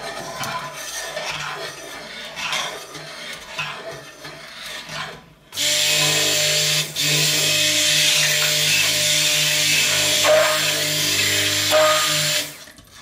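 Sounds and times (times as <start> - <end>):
stick blender running: 5.6 - 12.8.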